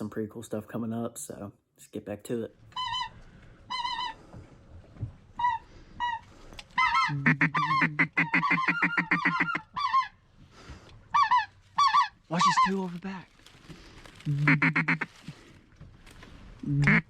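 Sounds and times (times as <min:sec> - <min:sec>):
geese honking: 0:02.7 - 0:04.2, 0:05.4 - 0:10.2, 0:11.1 - 0:12.9, 0:14.4 - 0:15.1, 0:16.8 - 0:17.0.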